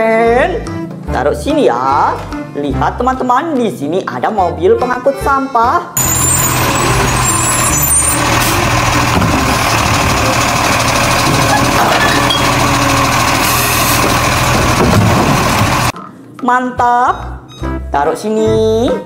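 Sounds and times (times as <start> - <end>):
heavy truck engine running: 6.0 - 16.0.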